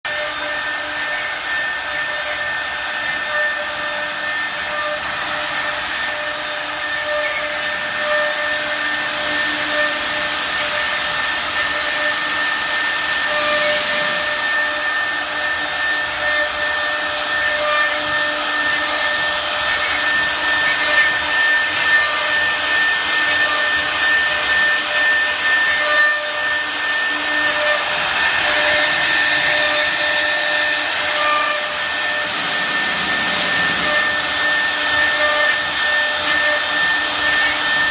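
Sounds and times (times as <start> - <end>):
router spindles whining: 0.1 - 37.9.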